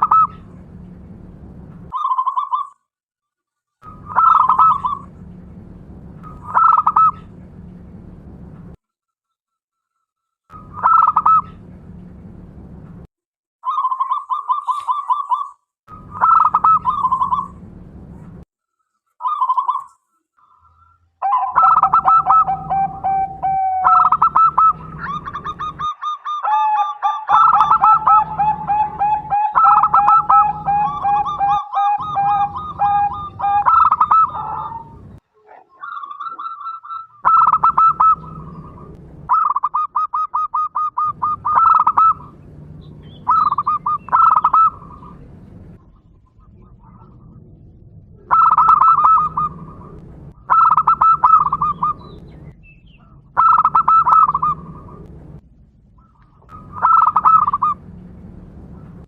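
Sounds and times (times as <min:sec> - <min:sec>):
lower-pitched bird call: 0:00.0 - 0:00.5, 0:01.9 - 0:02.8, 0:03.8 - 0:05.1, 0:06.2 - 0:07.3, 0:10.5 - 0:11.6, 0:13.6 - 0:17.6, 0:19.2 - 0:35.1, 0:35.7 - 0:45.3, 0:48.2 - 0:55.1, 0:56.0 - 0:57.8
doves cooing: 0:00.0 - 0:00.7, 0:03.9 - 0:05.2, 0:06.2 - 0:07.4, 0:10.6 - 0:11.7, 0:16.1 - 0:17.6, 0:20.4 - 0:47.4, 0:48.2 - 0:55.1, 0:56.0 - 0:59.0.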